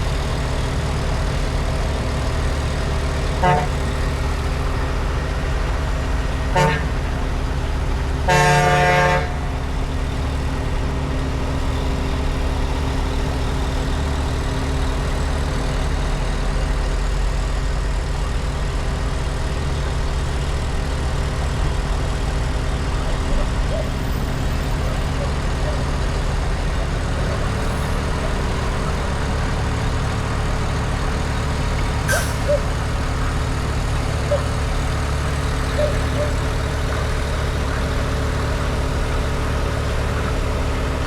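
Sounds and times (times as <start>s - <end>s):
heavy vehicle engine running: 0.0s - 41.0s
vehicle horn toots: 3.4s - 4.0s, 6.5s - 7.1s, 8.3s - 9.5s.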